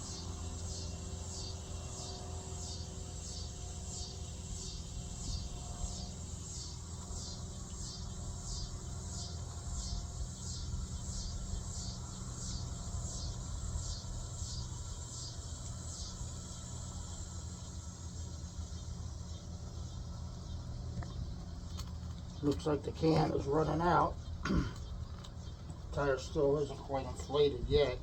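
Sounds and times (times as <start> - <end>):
insect chirping: 0.0 - 28.0
steady low rumble: 17.2 - 28.0.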